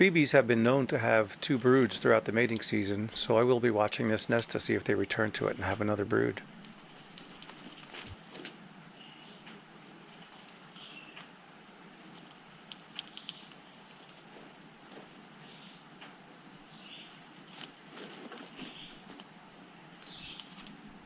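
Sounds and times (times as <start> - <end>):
insect trill: 0.3 - 11.6
sharp clicks: 6.6 - 8.2.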